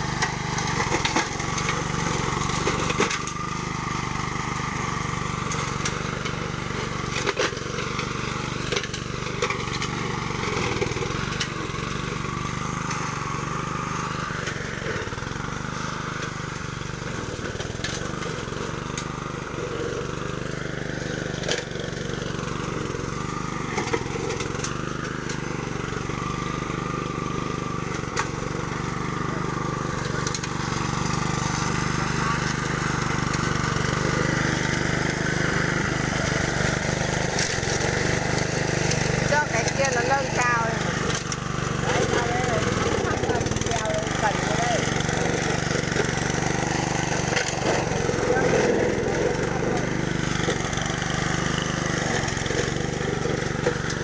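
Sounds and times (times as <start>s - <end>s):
lawn mower engine running: 0.0s - 54.0s.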